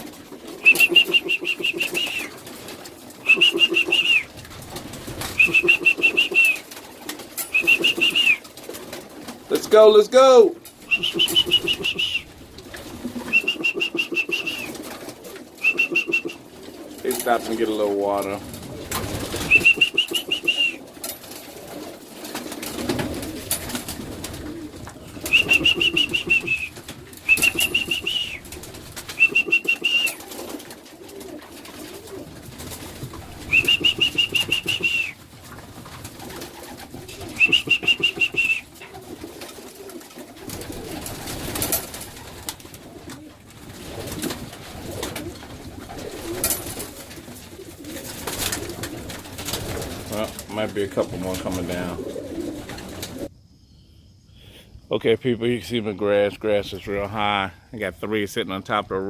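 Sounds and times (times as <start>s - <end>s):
pigeons cooing: 0.0s - 10.0s, 10.6s - 53.3s
pigeons shuffling: 0.0s - 53.3s
high quavering peeping call: 0.6s - 2.4s, 3.2s - 4.3s, 5.3s - 6.6s, 7.5s - 8.4s, 10.8s - 12.3s, 13.3s - 14.8s, 15.6s - 16.4s, 19.4s - 20.8s, 25.2s - 28.5s, 29.2s - 30.2s, 33.5s - 35.2s, 37.4s - 38.7s.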